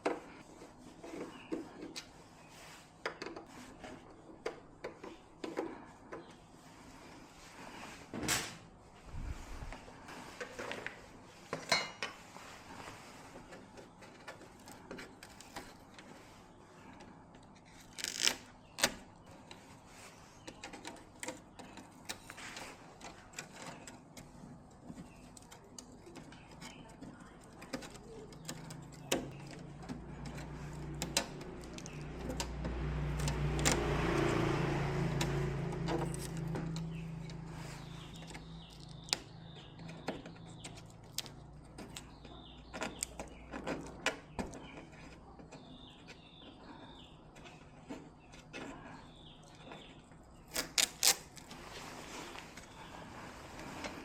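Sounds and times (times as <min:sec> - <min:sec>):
low motor hum: 0:28.4 - 0:40.6.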